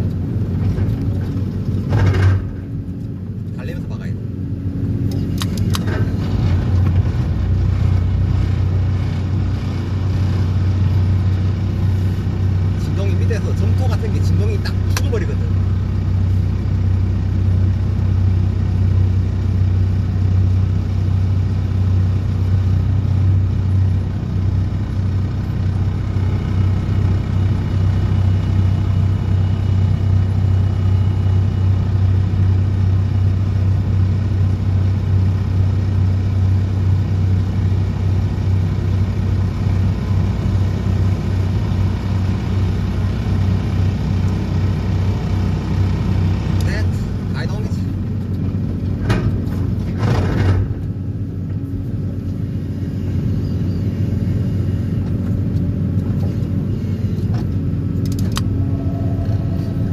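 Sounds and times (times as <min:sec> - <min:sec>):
excavator engine: 0:00.0 - 0:59.9
vibro hammer low drone: 0:57.6 - 0:59.9.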